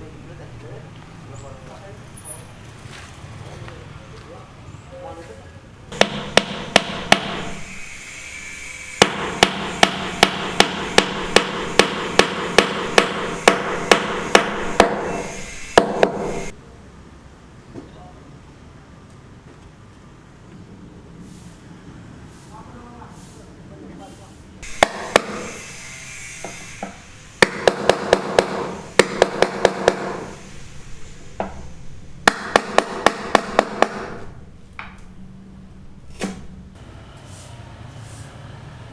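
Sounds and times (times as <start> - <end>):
hammer blows: 5.9 - 16.6, 24.6 - 36.8.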